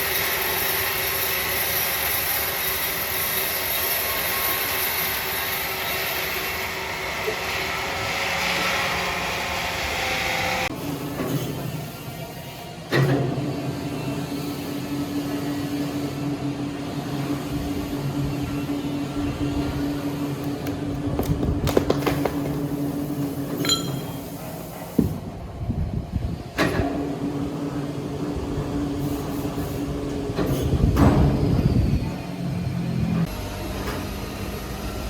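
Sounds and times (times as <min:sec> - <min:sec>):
knocks and clatter: 0:20.6 - 0:22.8.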